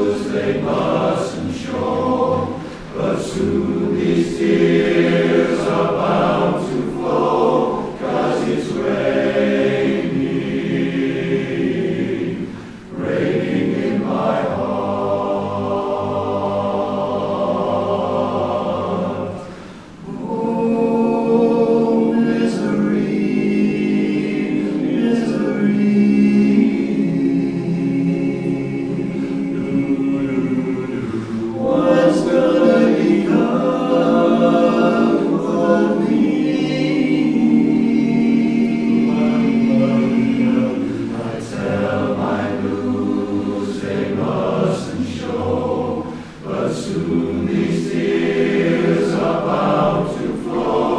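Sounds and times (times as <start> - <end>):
chorus singing in close harmony: 0.0 - 50.9.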